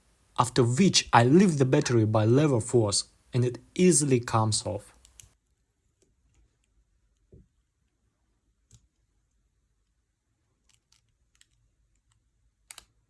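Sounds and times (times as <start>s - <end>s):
faint clicks of small parts: 4.9s - 8.0s, 8.6s - 10.0s, 10.6s - 13.0s.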